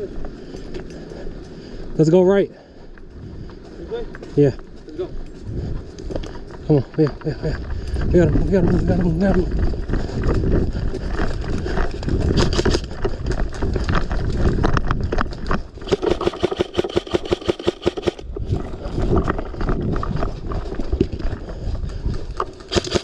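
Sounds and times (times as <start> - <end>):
airsoft guns firing rapidly: 15.8 - 18.2, 22.7 - 23.0.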